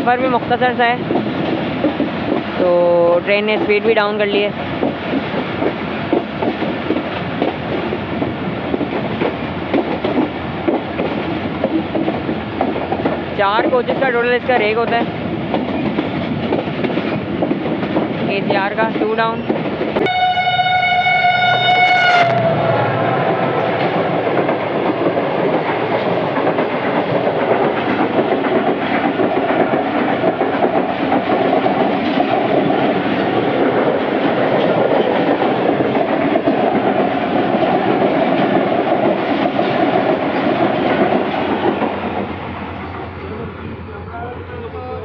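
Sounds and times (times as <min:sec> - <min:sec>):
train rumbling on track: 0:00.0 - 0:45.0
locomotive horn: 0:20.0 - 0:23.0.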